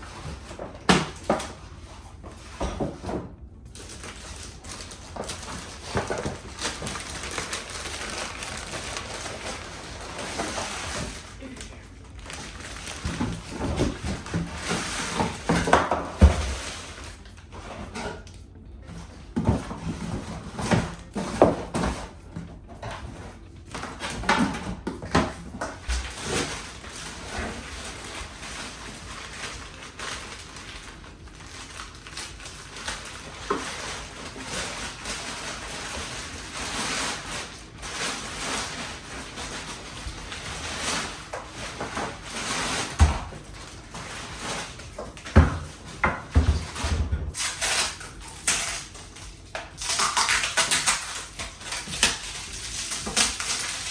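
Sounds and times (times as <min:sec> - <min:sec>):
wrapping rustling: 0:03.7 - 0:15.7, 0:25.7 - 0:46.0, 0:47.4 - 0:53.9.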